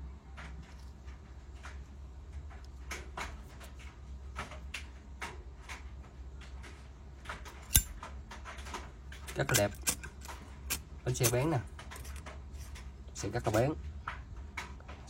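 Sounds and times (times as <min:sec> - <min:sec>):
steady low hum: 0:00.0 - 0:15.0
lighter lid snapping open: 0:07.7 - 0:07.9
lighter clicks and taps: 0:07.7 - 0:08.0.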